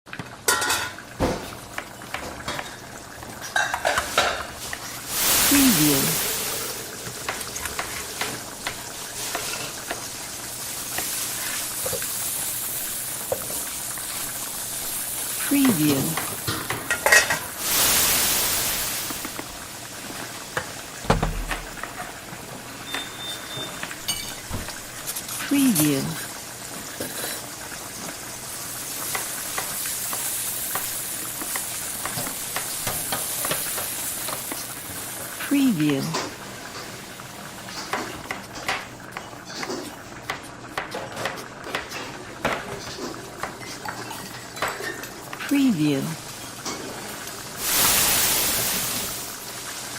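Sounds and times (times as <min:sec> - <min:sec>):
frying sizzle: 0:00.1 - 0:49.9
hiss of cooking: 0:00.2 - 0:49.9
utensils and dishes clinking: 0:00.4 - 0:12.2, 0:15.4 - 0:17.9, 0:20.5 - 0:26.0, 0:35.8 - 0:45.5, 0:46.2 - 0:49.2.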